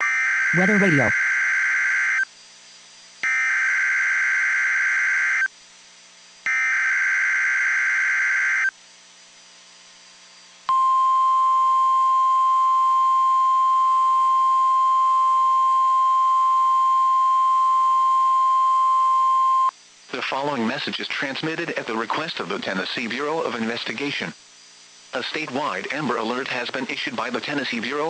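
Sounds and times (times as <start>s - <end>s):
harsh buzzing data bursts: 0.0s - 8.8s
steady attention tone: 0.5s - 1.2s, 10.7s - 19.7s.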